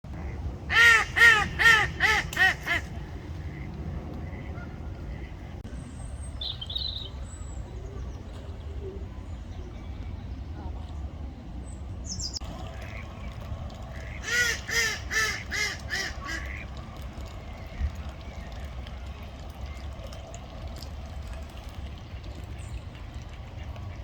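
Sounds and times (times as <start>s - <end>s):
steady low rumble: 0.1s - 24.0s
duck quacking: 0.2s - 2.9s, 14.0s - 16.6s.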